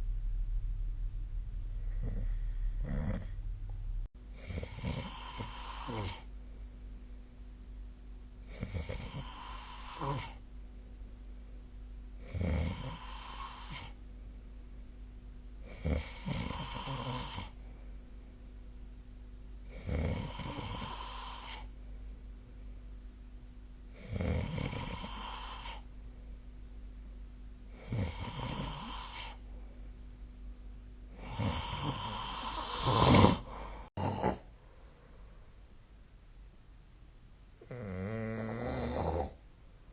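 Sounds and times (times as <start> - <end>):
person snoring: 1.8 - 3.4, 4.3 - 6.3, 8.4 - 10.4, 12.2 - 14.0, 15.6 - 17.6, 19.7 - 21.7, 23.9 - 25.8, 27.7 - 29.4, 31.1 - 34.5, 37.6 - 39.4.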